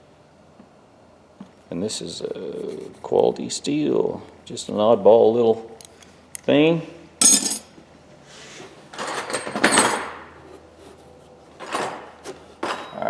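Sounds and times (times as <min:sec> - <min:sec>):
metal wrenches clinking: 0:07.2 - 0:07.6.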